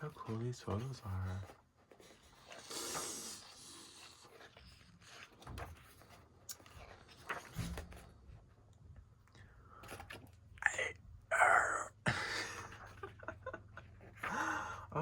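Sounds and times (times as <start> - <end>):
paper pages rustling: 0.0 - 2.6, 4.0 - 8.2, 9.8 - 10.3.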